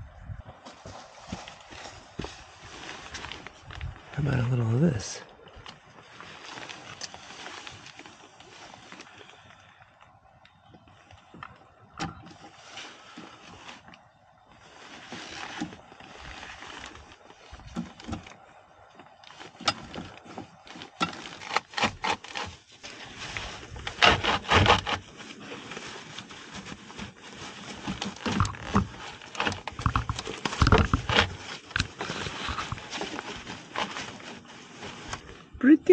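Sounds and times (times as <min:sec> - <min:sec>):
tools scraping and rubbing: 0:21.0 - 0:25.8, 0:27.6 - 0:35.2.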